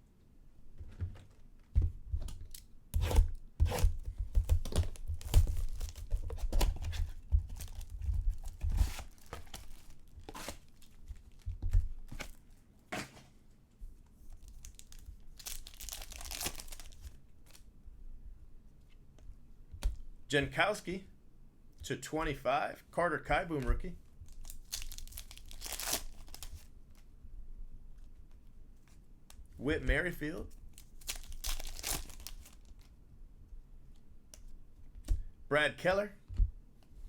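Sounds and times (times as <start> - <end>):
wrappers ripping and crinkling: 4.6 - 6.7, 7.5 - 11.4, 14.4 - 17.6, 24.3 - 26.7, 30.7 - 32.9.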